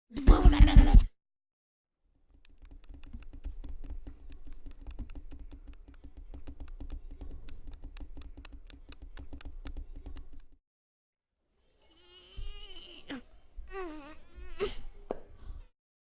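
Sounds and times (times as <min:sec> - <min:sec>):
patter of small clicks and taps: 0:02.4 - 0:10.6.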